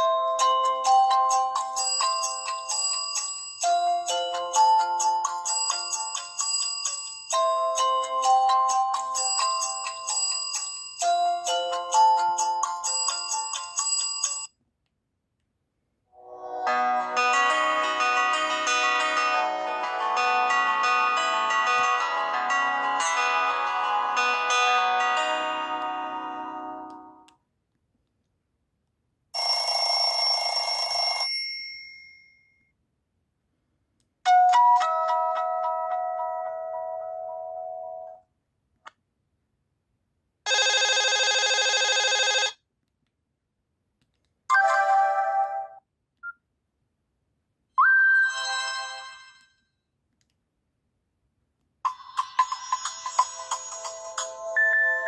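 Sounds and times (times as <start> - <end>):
chiming ringtone melody: 0.0 - 14.5, 16.3 - 26.9, 44.5 - 45.8, 47.8 - 49.7, 51.9 - 55.0
melodic phone ringtone: 0.0 - 14.5, 16.4 - 26.9, 29.4 - 31.4, 40.5 - 42.6, 44.5 - 45.8, 47.8 - 49.6, 51.9 - 55.0.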